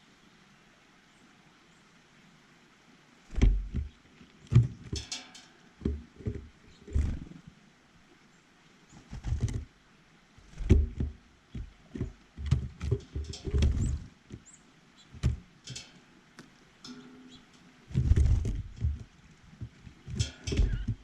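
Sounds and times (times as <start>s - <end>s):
birds pecking at feeder: 3.3s - 7.4s, 8.9s - 9.7s, 10.4s - 21.0s.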